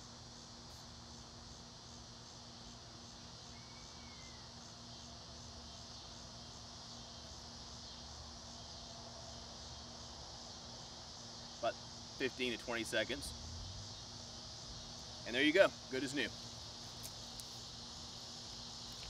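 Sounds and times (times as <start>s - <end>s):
steady high hiss: 0.0s - 19.0s
faint whistle: 3.5s - 4.5s.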